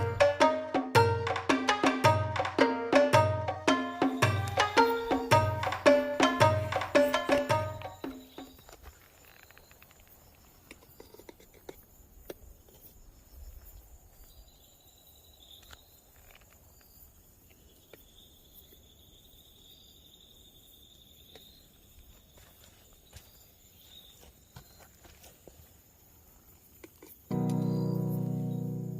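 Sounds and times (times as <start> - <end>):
insect lower chirping: 0.0 - 28.9
insect high trill: 3.7 - 10.5.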